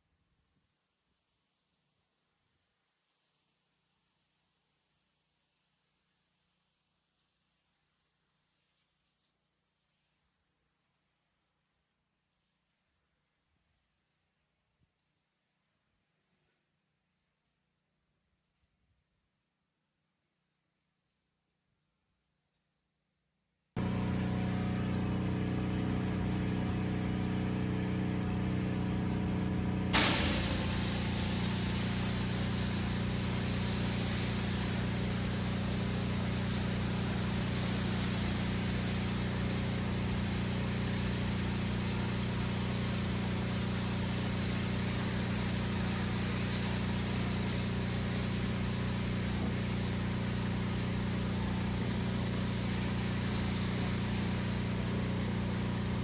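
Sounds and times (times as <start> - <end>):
pressure washer engine running: 23.8 - 56.0
high-pressure water spray hiss: 29.9 - 56.0.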